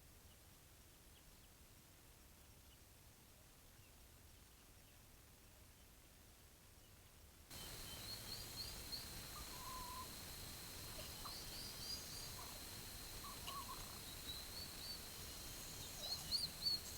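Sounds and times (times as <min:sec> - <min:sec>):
background hiss: 0:07.5 - 0:16.9
poults peeping: 0:07.5 - 0:16.9
steady high whine: 0:07.5 - 0:16.9
lower short calls: 0:07.6 - 0:16.9.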